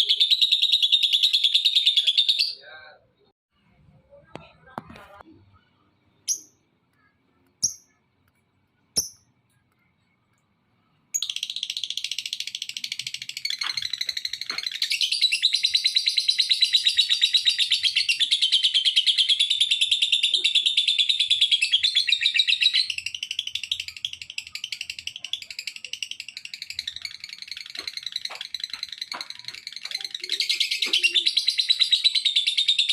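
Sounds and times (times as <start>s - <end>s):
lovebird chirping: 5.5s - 8.1s, 8.9s - 10.2s, 10.8s - 32.9s
lovebird chattering trill: 7.6s - 8.0s.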